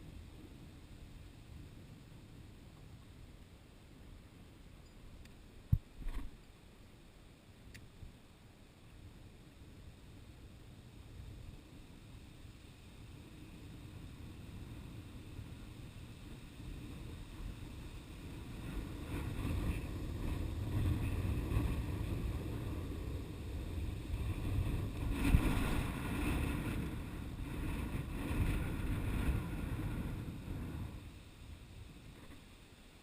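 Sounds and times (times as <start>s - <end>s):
wind buffeting microphone: 11.2s - 32.5s.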